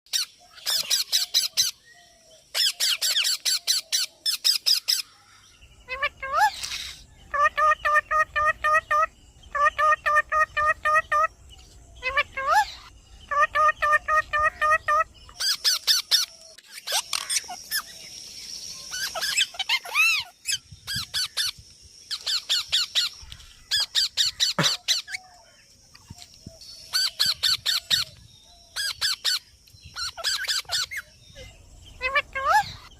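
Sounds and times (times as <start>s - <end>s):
parrot squawking and chattering: 5.9s - 11.3s, 12.0s - 17.9s, 18.9s - 21.5s, 23.7s - 25.2s, 30.0s - 31.0s, 32.0s - 32.9s.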